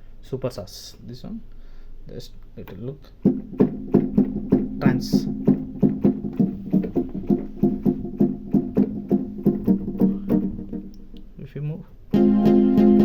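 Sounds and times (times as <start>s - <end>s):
synth keyboard plucked notes: 3.2s - 11.3s, 12.1s - 13.0s.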